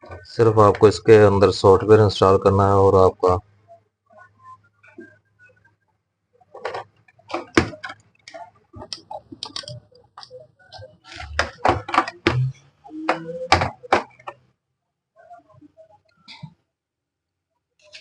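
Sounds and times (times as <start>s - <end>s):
hands tapping and knocking on parts: 6.6s - 12.5s, 13.1s - 14.4s.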